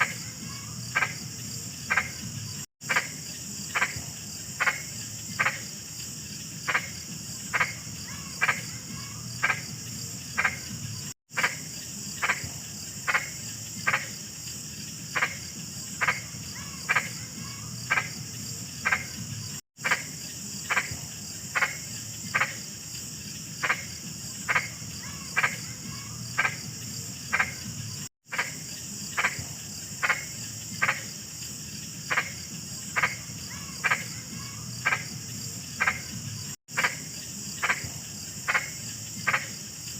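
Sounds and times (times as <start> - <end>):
frog croaking: 0.0 - 5.9, 6.5 - 14.4, 15.0 - 22.8, 23.5 - 31.4, 32.0 - 39.9.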